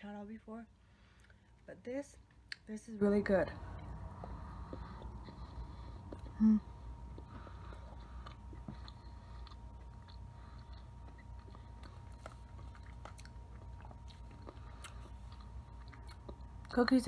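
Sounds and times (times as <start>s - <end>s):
faint steady hum: 0.0s - 17.0s
person chewing: 3.6s - 16.7s.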